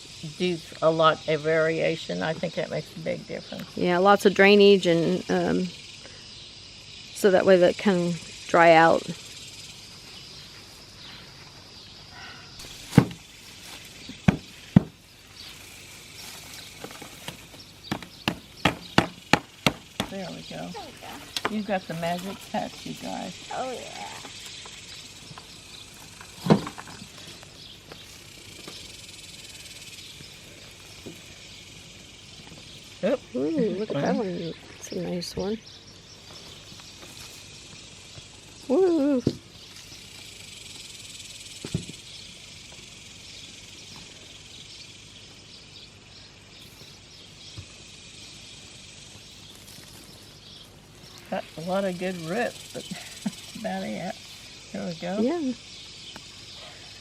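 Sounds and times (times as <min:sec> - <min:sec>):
insect chirps: 0:00.0 - 0:57.0
insects chirring: 0:00.0 - 0:57.0
hands digging through soil: 0:49.5 - 0:51.4.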